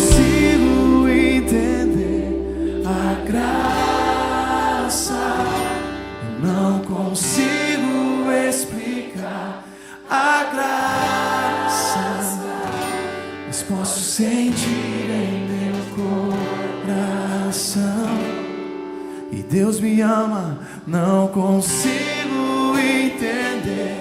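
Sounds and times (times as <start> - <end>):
low held bass note: 0.0 - 6.5
worship music with singing: 0.0 - 18.5, 19.2 - 24.0.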